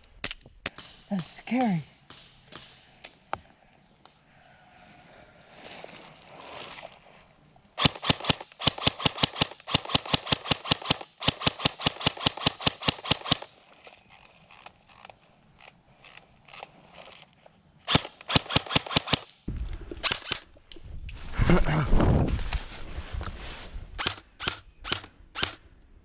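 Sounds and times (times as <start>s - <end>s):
airsoft gun firing rapidly: 7.8s - 13.5s, 17.9s - 19.3s.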